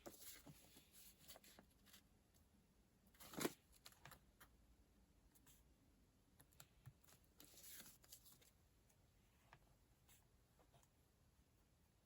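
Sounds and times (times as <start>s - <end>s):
paper rustling: 0.0s - 2.1s, 7.4s - 8.6s.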